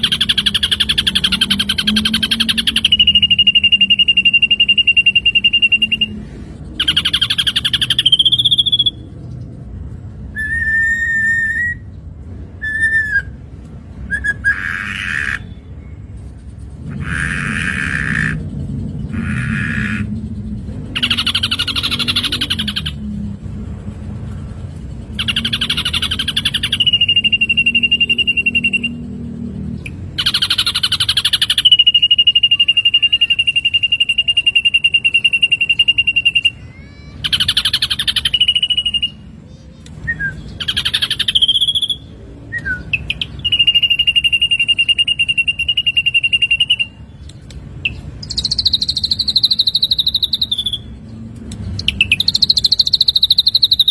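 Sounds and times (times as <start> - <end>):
bird harsh rasping calls: 0.0 - 9.0, 14.2 - 15.8, 16.8 - 23.1, 25.1 - 29.0, 30.0 - 51.1, 51.7 - 53.9
bird long whistle: 0.1 - 6.2, 10.3 - 11.9, 25.2 - 29.0, 40.0 - 47.0.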